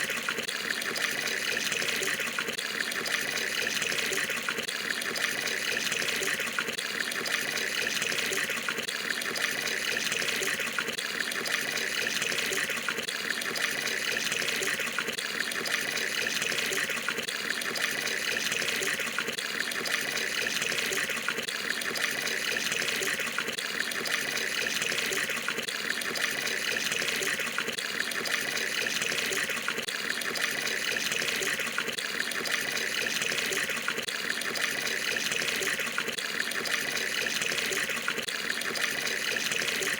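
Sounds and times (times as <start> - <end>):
tap water pouring into a tub: 0.0 - 39.9.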